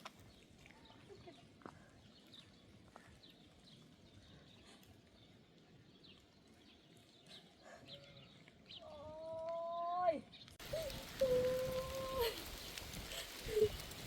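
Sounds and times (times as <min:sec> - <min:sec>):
small birds chirping: 0:00.0 - 0:14.0.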